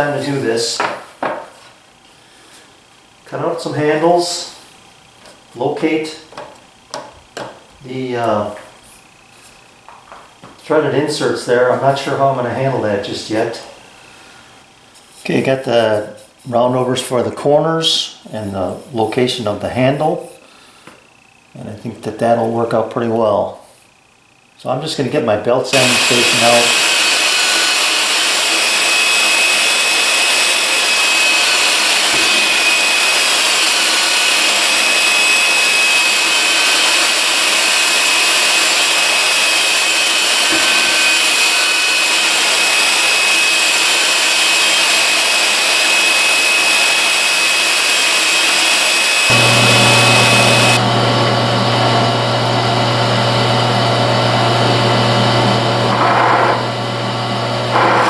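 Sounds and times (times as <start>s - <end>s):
power tool hiss and whine: 25.7s - 58.0s
deep humming machine: 49.3s - 58.0s.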